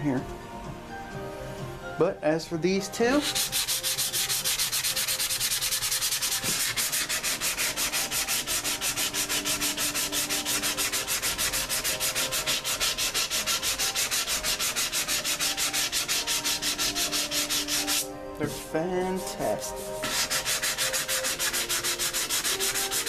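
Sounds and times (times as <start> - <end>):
hand sanding strokes: 3.1 - 18.9, 19.5 - 23.0.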